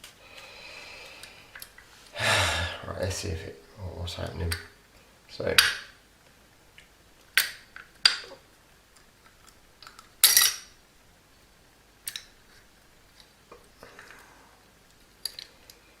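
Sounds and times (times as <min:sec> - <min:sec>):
small metal parts clinking: 0:09.8 - 0:10.8.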